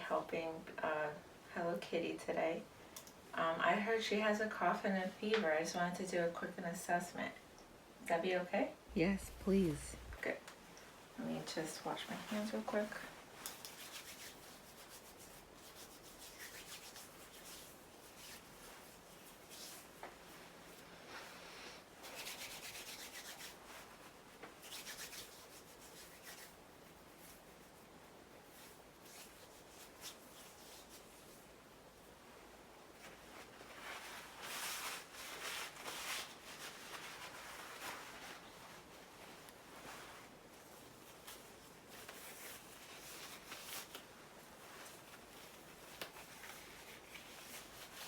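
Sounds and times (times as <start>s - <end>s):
rustling handling noises: 8.9s - 48.0s
hands rubbing together: 13.4s - 20.0s, 22.0s - 27.8s, 28.5s - 31.4s.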